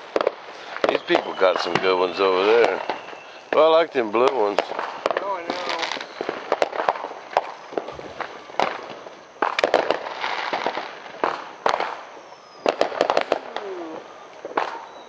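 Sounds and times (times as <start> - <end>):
fireworks banging: 0.0 - 15.0
fireworks crackling: 0.0 - 15.0
man saying ooh: 13.4 - 14.2.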